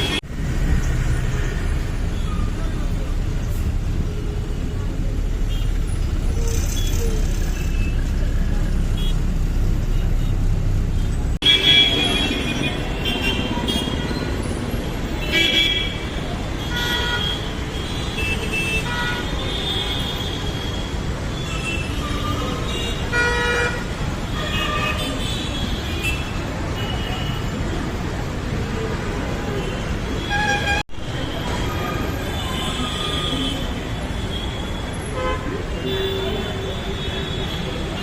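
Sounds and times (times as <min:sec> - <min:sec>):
traffic engine rumble: 0:00.0 - 0:38.0
vehicle horns honking: 0:11.0 - 0:14.3.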